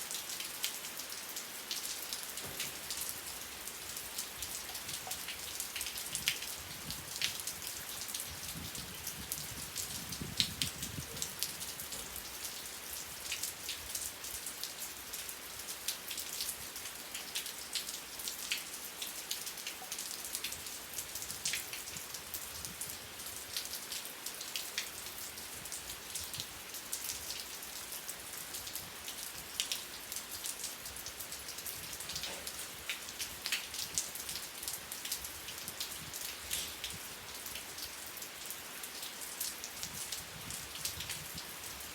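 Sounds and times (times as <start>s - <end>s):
steady rain hiss: 0.0s - 41.9s
raindrops ticking: 1.7s - 6.5s.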